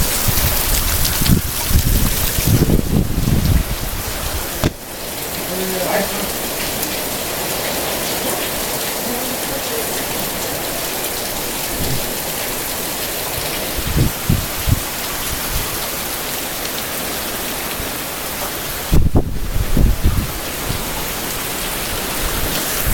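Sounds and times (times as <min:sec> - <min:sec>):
heavy rain pouring: 0:00.0 - 0:22.9
short low thumps: 0:04.6 - 0:05.0.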